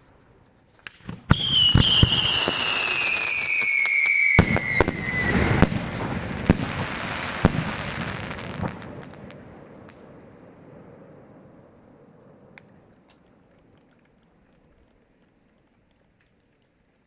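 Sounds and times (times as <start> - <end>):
fireworks bangs and crackling: 0.0 - 13.0.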